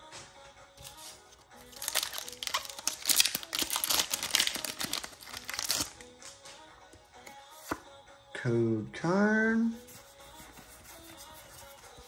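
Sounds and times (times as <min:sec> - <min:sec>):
faint background music: 0:00.0 - 0:12.0
foil wrapper crinkling: 0:01.6 - 0:06.0.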